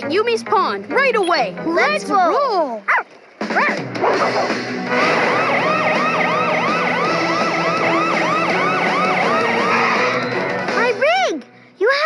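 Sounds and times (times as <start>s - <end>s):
cartoon siren wailing: 4.9s - 10.3s.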